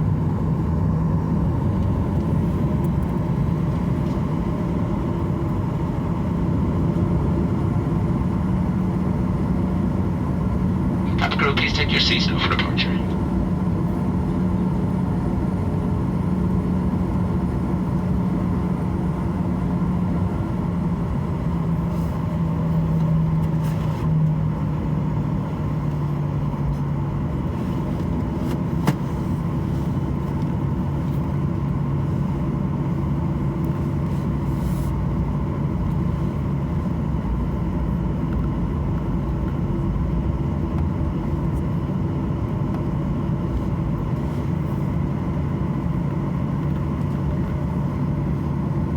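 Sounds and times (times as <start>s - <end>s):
jet engines humming: 11.1s - 13.4s.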